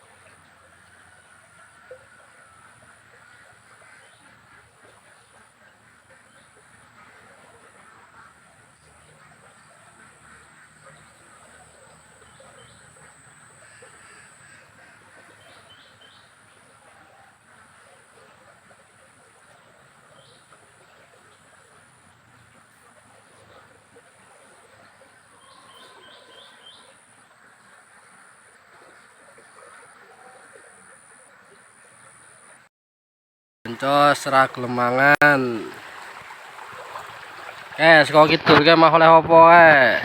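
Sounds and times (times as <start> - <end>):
rushing water: 0.0 - 32.7, 33.7 - 40.0
bird chirps: 25.4 - 26.9.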